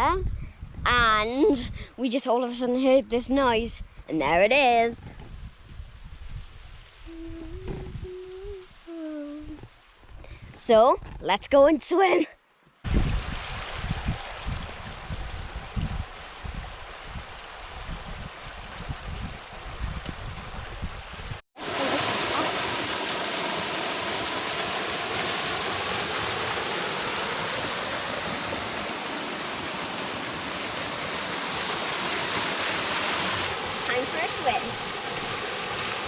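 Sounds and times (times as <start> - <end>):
wind buffeting on microphone: 0.0 - 2.0, 3.2 - 8.7, 12.8 - 22.6
waterfall rushing: 21.6 - 36.0.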